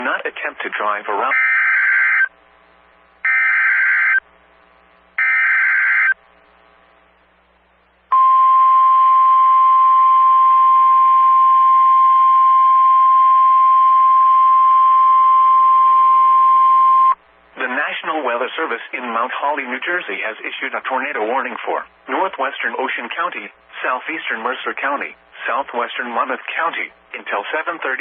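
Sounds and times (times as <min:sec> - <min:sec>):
steady single-pitch alarm tone: 0:01.3 - 0:02.3, 0:03.2 - 0:04.2, 0:05.2 - 0:06.2, 0:08.1 - 0:17.2
alert header data bursts: 0:03.2 - 0:04.2, 0:05.2 - 0:06.2.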